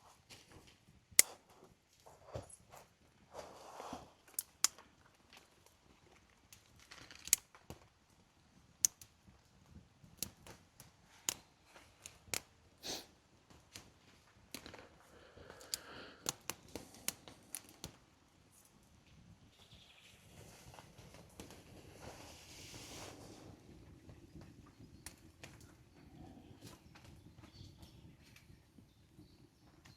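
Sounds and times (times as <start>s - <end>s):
campfire wood crackling: 0.0s - 29.9s
short hiss: 12.8s - 13.1s.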